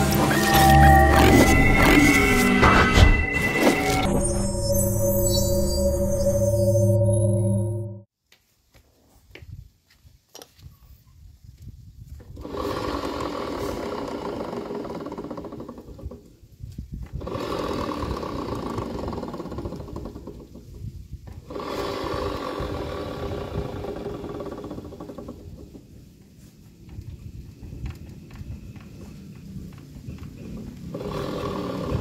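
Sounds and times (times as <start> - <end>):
scooter drive rattling growl: 0.0 - 3.2, 12.4 - 16.4, 17.1 - 20.8, 21.4 - 25.9, 28.8 - 32.0.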